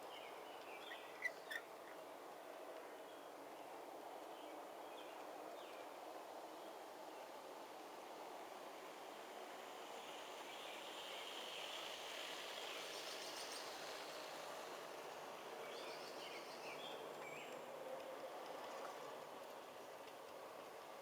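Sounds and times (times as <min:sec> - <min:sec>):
model train wheels rolling on track: 0:08.7 - 0:15.6.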